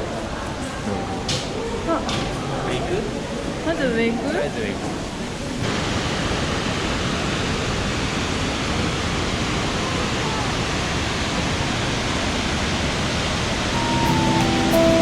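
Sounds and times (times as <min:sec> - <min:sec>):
waterfall rushing: 0:05.6 - 0:15.0
guitar music: 0:13.8 - 0:15.0.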